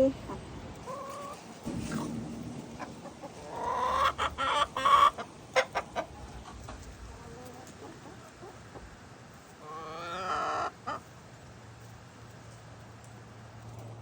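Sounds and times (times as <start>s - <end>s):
hens clucking: 0.0s - 11.2s.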